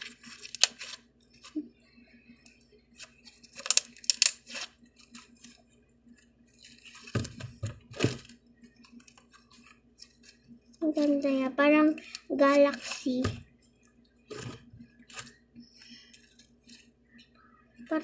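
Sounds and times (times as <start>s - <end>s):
slime crackling and popping: 3.5s - 4.7s.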